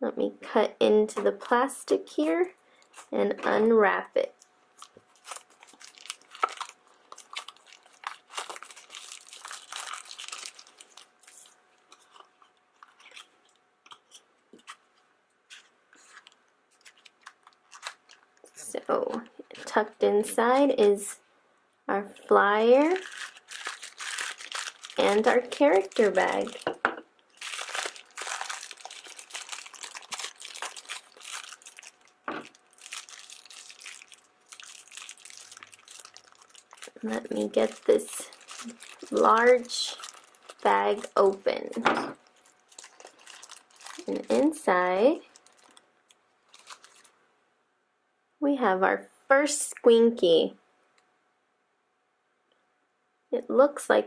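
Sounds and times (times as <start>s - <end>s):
plastic wrapping crinkling: 1.2s - 19.9s, 22.7s - 47.2s.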